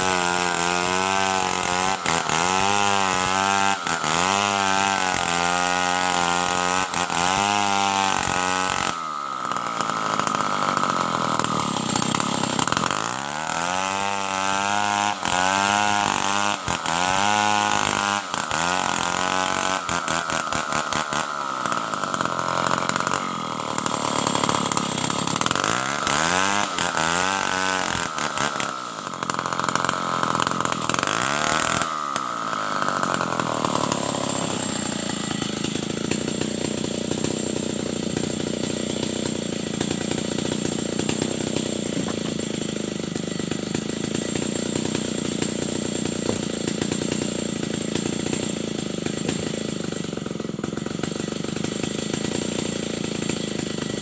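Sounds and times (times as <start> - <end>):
chainsaw running at high revs: 0.0 - 54.0.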